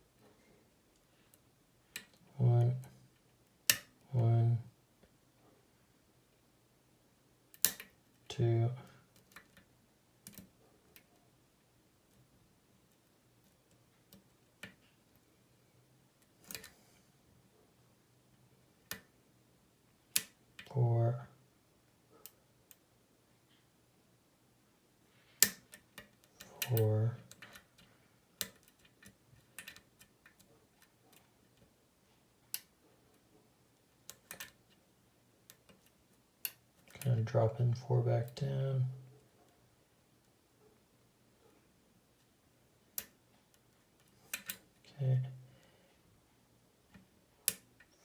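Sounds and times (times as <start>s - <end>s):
lock pick clicking in lock: 7.6s - 7.9s, 16.4s - 16.7s, 25.4s - 27.6s, 28.4s - 30.4s, 34.1s - 34.6s, 44.3s - 44.6s, 47.5s - 47.7s.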